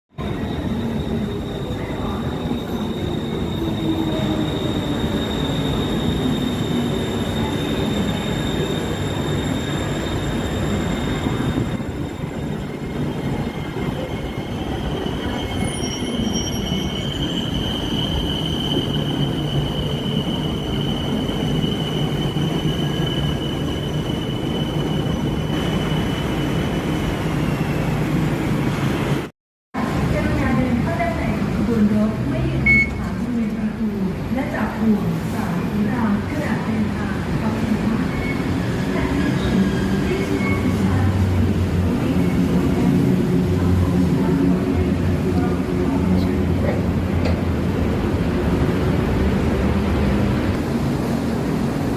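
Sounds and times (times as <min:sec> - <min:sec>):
electric train rumbling: 0:00.1 - 0:51.9
high-pitched train whine: 0:00.2 - 0:28.0.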